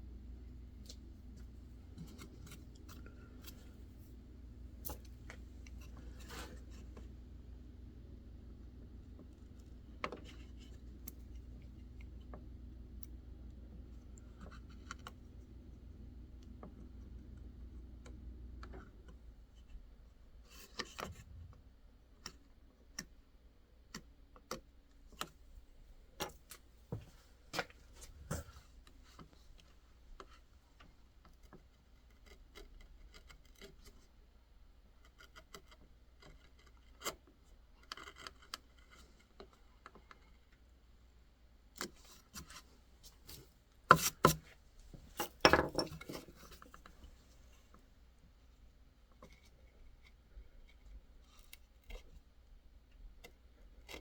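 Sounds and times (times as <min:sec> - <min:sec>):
knife carving wood: 0:00.7 - 0:07.7, 0:08.6 - 0:13.2, 0:31.2 - 0:40.7, 0:41.7 - 0:47.1, 0:49.1 - 0:54.0.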